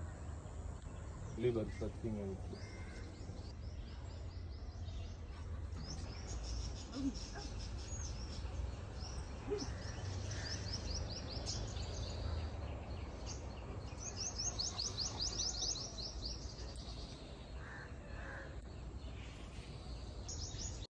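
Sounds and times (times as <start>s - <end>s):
small birds chirping: 0.0s - 20.9s.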